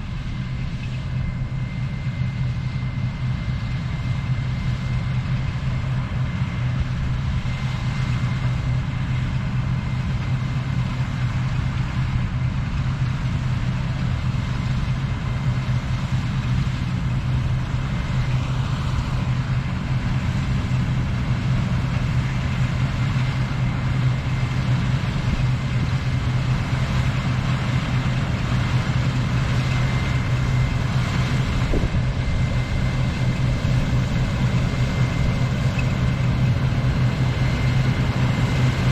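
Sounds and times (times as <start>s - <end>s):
combine harvester engine drone: 0.0s - 38.9s
high whine: 16.4s - 38.9s.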